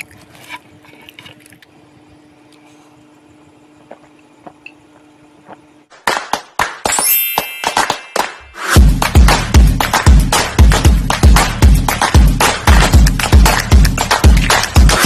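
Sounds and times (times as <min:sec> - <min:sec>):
low steady hum: 0:00.0 - 0:06.0
percussive music hits: 0:06.0 - 0:15.0.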